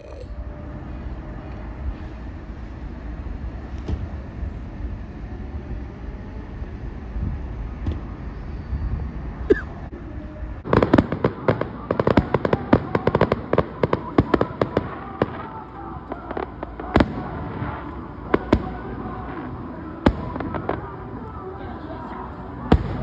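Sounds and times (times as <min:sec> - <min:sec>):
firecrackers popping: 0:10.6 - 0:23.0.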